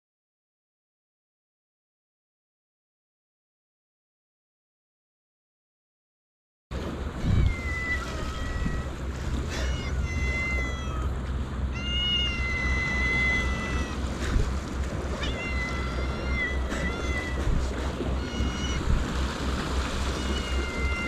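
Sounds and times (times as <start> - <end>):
low rumble: 6.7 - 21.0
cat meowing: 7.2 - 11.1, 11.7 - 14.0, 15.2 - 19.0, 20.1 - 21.0.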